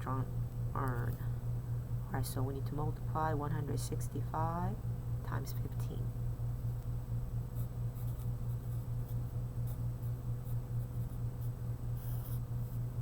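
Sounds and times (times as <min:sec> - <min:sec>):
steady low hum: 0:00.0 - 0:13.0
pen scratching while writing: 0:10.5 - 0:12.8.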